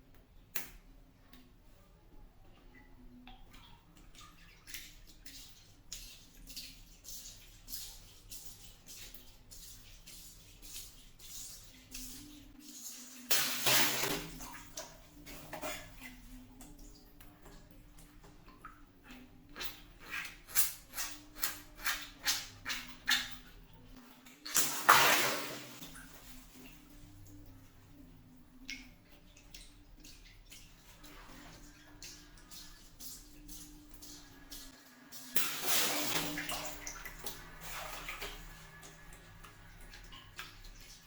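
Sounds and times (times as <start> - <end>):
water splashing: 19.6 - 41.0
sharp water splats: 24.5 - 26.1.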